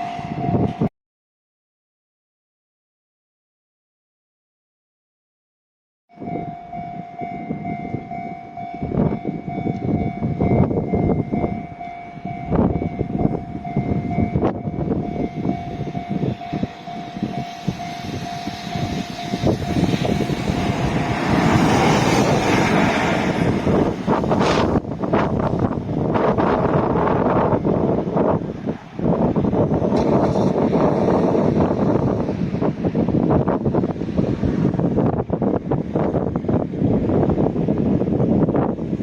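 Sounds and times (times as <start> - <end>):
steady high tone: 6.1 - 24.7
freight train knocking: 6.4 - 28.5
broad rushing noise: 15.1 - 39.0.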